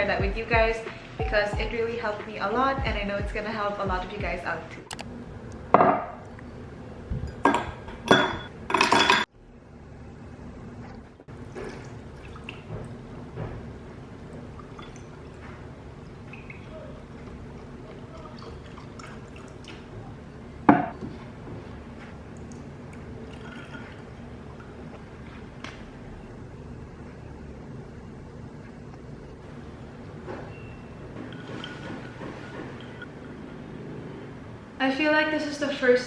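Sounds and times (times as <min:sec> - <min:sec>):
glass and dishware clinking: 0:07.2 - 0:09.3, 0:30.5 - 0:33.4
liquid pouring into a glass: 0:14.5 - 0:20.2, 0:22.3 - 0:25.0.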